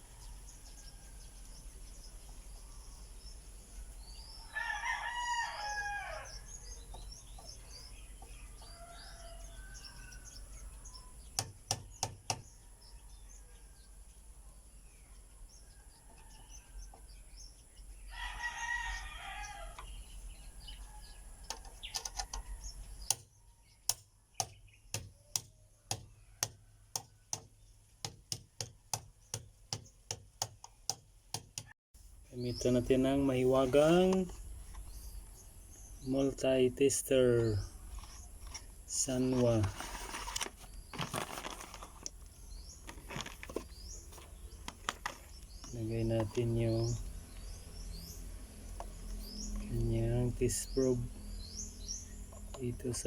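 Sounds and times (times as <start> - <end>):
rooster crowing: 4.5 - 6.5, 8.6 - 10.6, 18.1 - 19.8.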